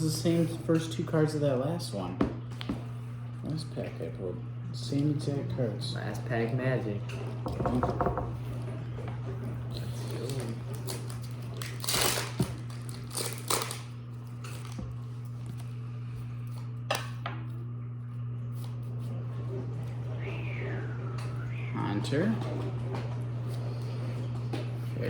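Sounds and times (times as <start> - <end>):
low electrical hum: 0.0 - 25.0
foil wrapper crinkling: 10.0 - 14.8.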